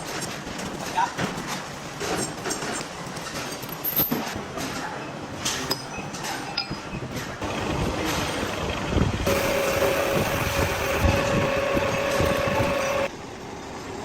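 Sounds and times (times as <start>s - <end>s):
metalworking machine running: 7.4s - 13.1s
high whine: 9.3s - 13.1s.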